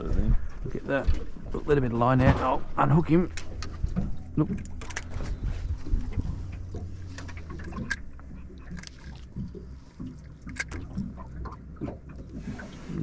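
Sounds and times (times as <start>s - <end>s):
knocks and clicks in a boat: 0.0s - 13.0s
low steady rumble: 0.0s - 13.0s.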